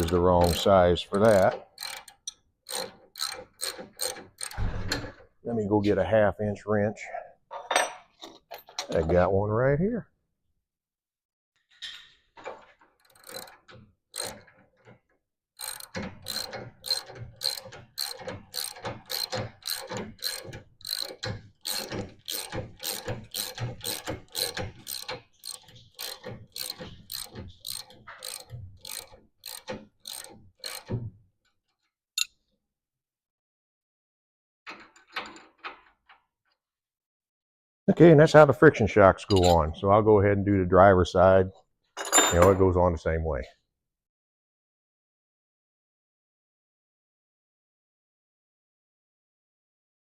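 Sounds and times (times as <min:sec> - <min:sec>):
ratcheting wrench clicking: 0:00.0 - 0:04.6, 0:13.0 - 0:14.6, 0:15.6 - 0:31.0
clatter of tools: 0:00.0 - 0:05.2, 0:42.0 - 0:42.6.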